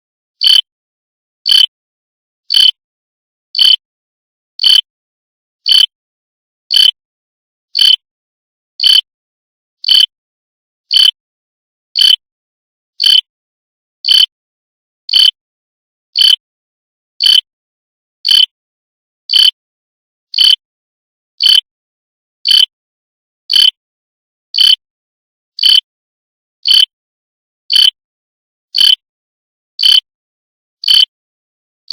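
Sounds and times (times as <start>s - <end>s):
alarm clock beeping: 0.4s - 0.6s, 1.5s - 1.7s, 2.5s - 2.8s, 3.6s - 3.8s, 4.6s - 4.8s, 6.7s - 7.0s, 7.8s - 8.0s, 8.8s - 9.0s, 10.9s - 11.2s, 12.0s - 12.2s, 13.0s - 13.2s, 14.1s - 14.3s, 15.1s - 15.4s, 16.2s - 16.4s, 17.2s - 17.4s, 18.3s - 18.5s, 19.3s - 19.6s, 20.4s - 20.6s, 21.4s - 21.6s, 22.5s - 22.7s, 23.5s - 23.7s, 24.6s - 24.8s, 25.6s - 25.8s, 26.7s - 26.9s, 27.7s - 28.0s, 28.8s - 29.0s, 29.8s - 30.0s, 30.8s - 31.1s.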